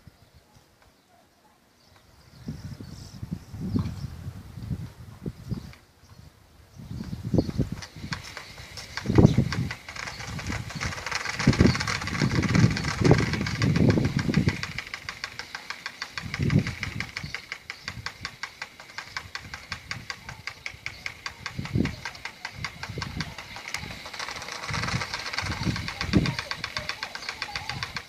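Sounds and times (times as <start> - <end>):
engine idling with ticking beat: 7.8 - 28.0.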